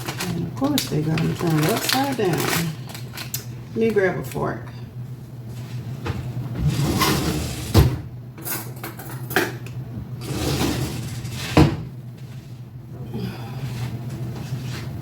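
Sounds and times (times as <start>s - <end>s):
kitchenware rustling: 0.0s - 4.6s.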